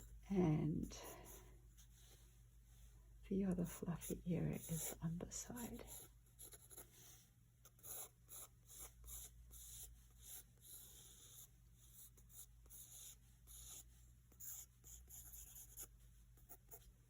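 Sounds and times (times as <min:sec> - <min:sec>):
pencil scratching on paper: 0:00.8 - 0:02.2, 0:03.6 - 0:17.0.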